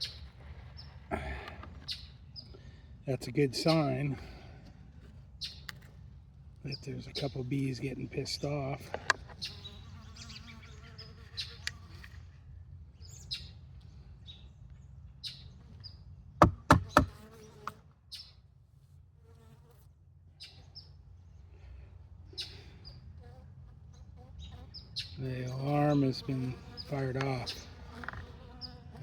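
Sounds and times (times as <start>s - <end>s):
sharp clicks or knocks: 16.4s - 17.1s
bees buzzing: 16.4s - 17.7s, 25.4s - 29.0s.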